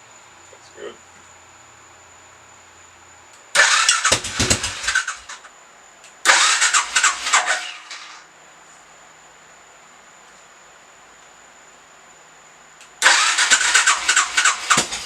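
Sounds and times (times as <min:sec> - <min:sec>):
motorcycle engine cranking: 0:03.6 - 0:05.4, 0:06.3 - 0:08.2, 0:13.0 - 0:15.0.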